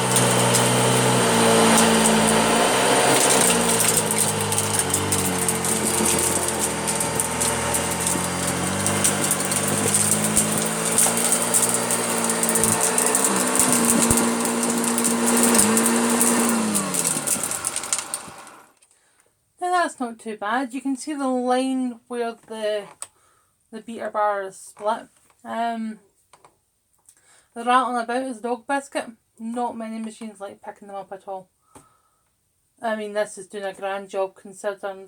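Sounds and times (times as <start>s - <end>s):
debris rattling through vacuum: 0.0s - 18.7s
upright vacuum cleaner running: 0.0s - 18.7s
vacuum motor spinning down: 0.0s - 18.7s.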